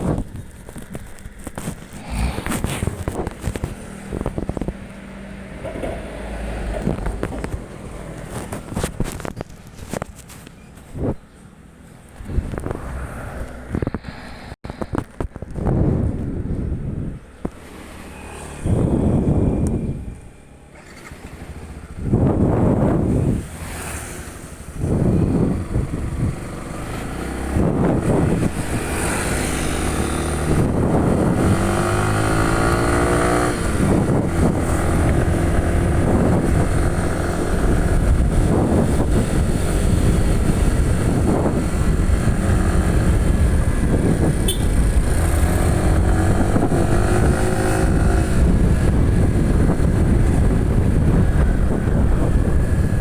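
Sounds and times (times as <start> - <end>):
motorcycle engine revving: 0.0 - 9.4, 17.6 - 53.0
wind rumble on microphone: 0.0 - 11.4, 12.1 - 53.0.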